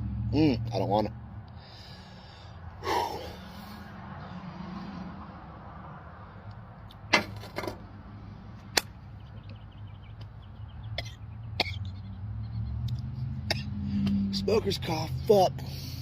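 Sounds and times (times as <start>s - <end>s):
sharp knocks: 7.1s - 7.8s
man coughing and gagging: 10.9s - 12.0s, 13.4s - 13.8s.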